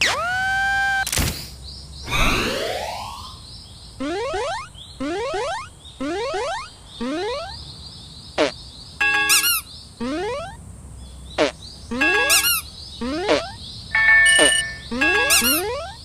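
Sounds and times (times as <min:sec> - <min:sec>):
cartoon rising chirps: 0:02.0 - 0:03.4, 0:04.0 - 0:07.6, 0:09.2 - 0:10.6, 0:11.4 - 0:16.0
bell-like electronic tones: 0:11.9 - 0:12.6, 0:13.9 - 0:16.0.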